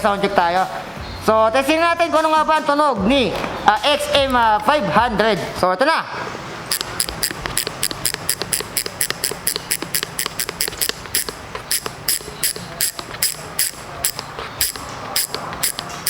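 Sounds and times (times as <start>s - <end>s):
bicycle hub ratchet clicks: 6.7s - 16.0s.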